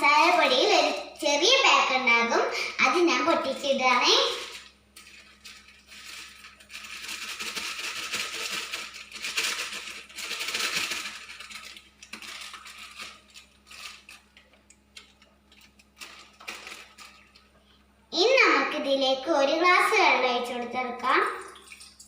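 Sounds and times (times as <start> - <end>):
contents shaken out: 4.1 - 17.4
plastic packet crinkling and tearing: 4.2 - 17.5.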